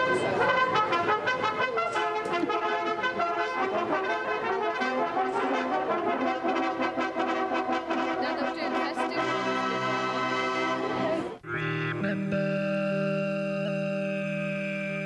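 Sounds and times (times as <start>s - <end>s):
brass instruments sustained notes: 0.0s - 11.4s.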